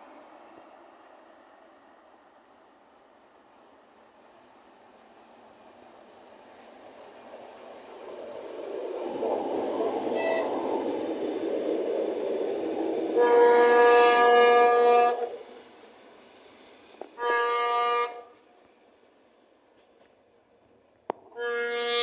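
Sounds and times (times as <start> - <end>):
diesel locomotive engine: 0.0 - 22.0
locomotive horn blasts: 10.1 - 10.5, 13.2 - 15.2, 17.2 - 18.3, 21.3 - 22.0.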